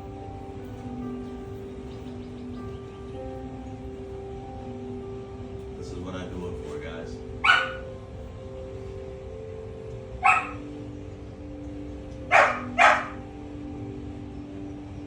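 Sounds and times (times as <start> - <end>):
faint steady hum: 0.0 - 15.0
dog barking: 7.4 - 7.9, 10.2 - 10.7, 12.2 - 13.3.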